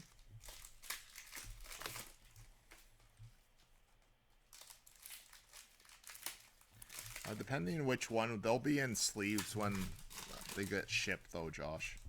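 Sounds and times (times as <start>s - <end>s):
cards and wrappers rustling: 0.0s - 12.0s.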